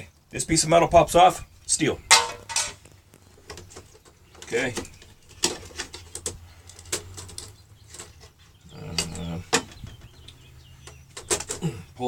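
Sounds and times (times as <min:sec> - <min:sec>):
metal and plastic parts clicking: 0:03.4 - 0:08.3.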